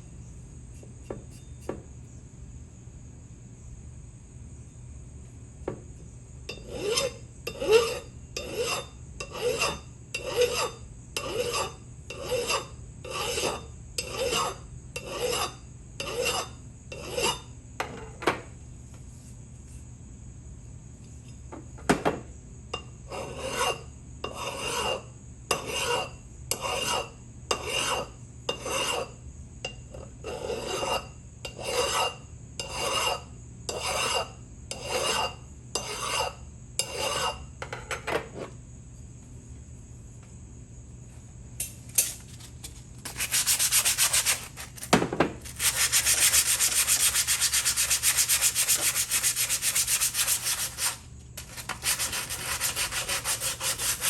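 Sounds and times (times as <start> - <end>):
abrasive rubbing on metal: 43.1 - 54.0.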